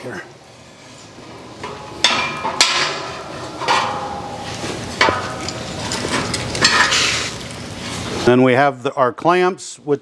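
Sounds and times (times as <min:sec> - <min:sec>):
metal knocks and clanks: 0:01.2 - 0:07.0.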